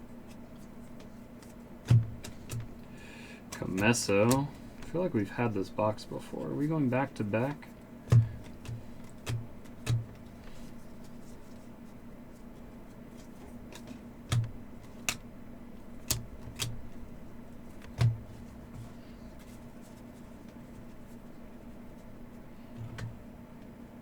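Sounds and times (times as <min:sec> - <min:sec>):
steady low hum: 0:00.0 - 0:24.0
cards tapping and clicking: 0:00.3 - 0:05.2, 0:07.4 - 0:11.4, 0:13.1 - 0:15.3, 0:16.0 - 0:17.1, 0:17.7 - 0:19.6.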